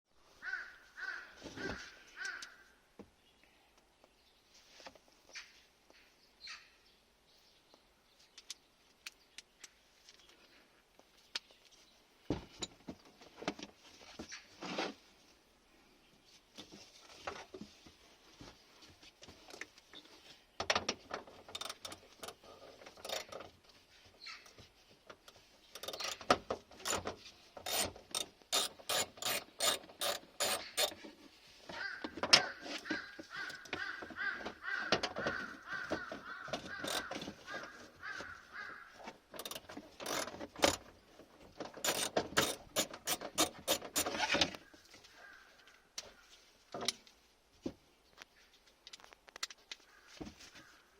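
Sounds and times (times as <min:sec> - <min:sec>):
hand ratchet clicking: 0:21.5 - 0:23.4, 0:25.7 - 0:31.0, 0:33.4 - 0:33.8, 0:36.6 - 0:37.2, 0:39.4 - 0:40.9, 0:41.7 - 0:44.3.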